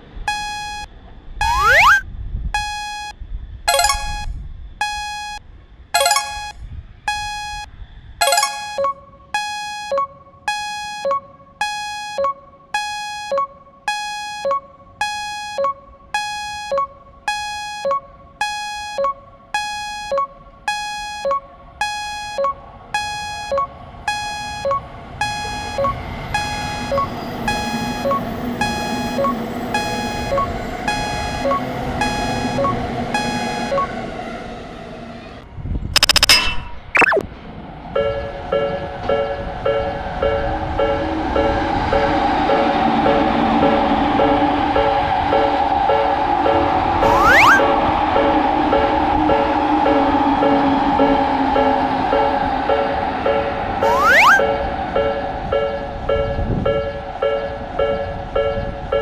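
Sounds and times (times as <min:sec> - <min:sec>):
railroad crossing warning bell: 0:03.7 - 0:05.4, 0:06.0 - 0:12.2, 0:19.6 - 0:34.2, 0:37.9 - 0:59.0.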